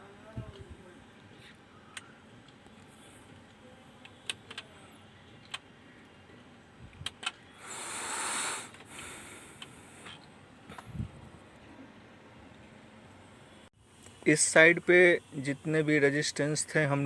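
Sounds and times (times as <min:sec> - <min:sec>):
hiss: 0:07.6 - 0:10.2.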